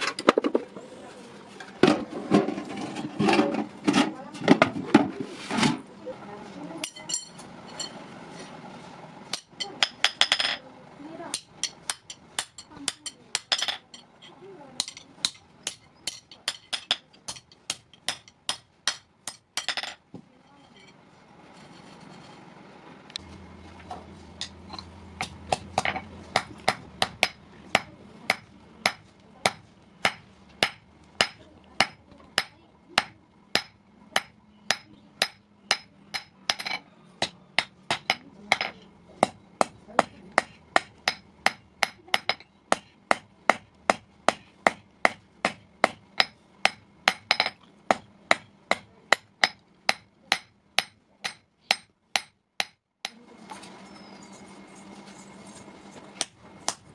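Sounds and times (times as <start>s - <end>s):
hammer striking iron: 9.3s - 10.6s, 11.3s - 14.0s, 14.8s - 20.0s, 24.4s - 53.2s.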